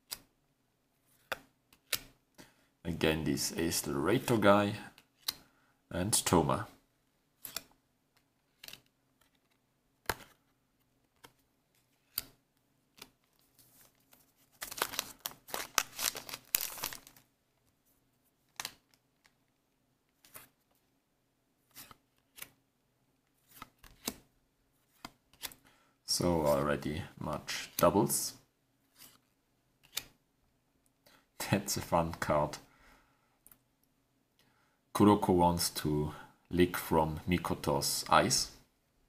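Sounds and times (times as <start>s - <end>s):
cards tapping and sliding: 1.2s - 2.2s, 7.4s - 16.9s, 23.4s - 24.2s, 24.9s - 25.6s, 29.8s - 30.2s
papery crinkling and rustling: 13.0s - 17.3s.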